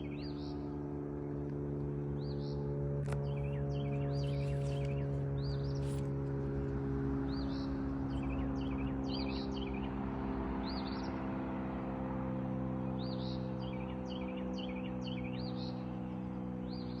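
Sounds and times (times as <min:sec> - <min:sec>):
low droning hum: 0:00.0 - 0:17.0
small birds chirping: 0:02.1 - 0:11.3, 0:12.6 - 0:17.0.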